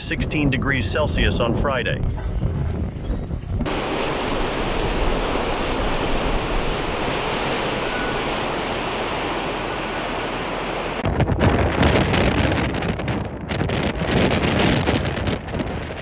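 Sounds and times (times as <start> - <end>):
steady rushing noise: 3.6 - 16.0.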